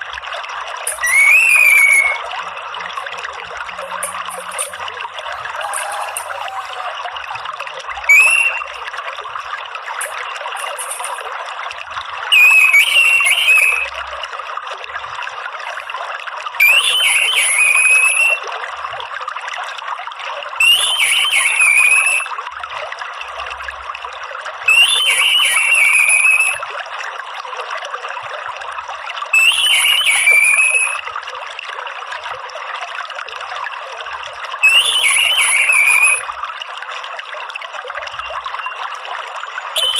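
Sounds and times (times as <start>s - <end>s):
trickle of running water: 0.0s - 39.9s
thrush whistled call: 0.9s - 2.5s, 5.4s - 7.0s, 8.0s - 8.8s, 10.0s - 11.2s, 12.3s - 13.9s, 16.6s - 18.4s, 20.6s - 22.3s, 24.7s - 26.6s, 29.3s - 31.0s, 34.6s - 36.3s, 38.2s - 38.9s, 39.6s - 39.9s.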